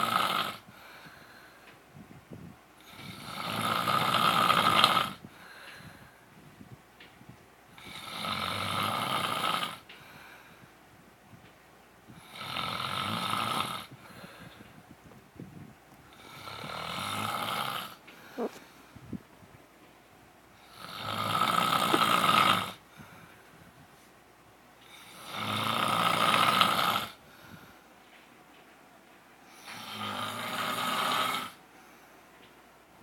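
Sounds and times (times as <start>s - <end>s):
man snoring: 0.0s - 0.7s, 2.8s - 5.2s, 7.8s - 9.9s, 12.1s - 14.0s, 16.1s - 18.6s, 20.6s - 22.8s, 24.8s - 27.2s, 29.6s - 31.6s.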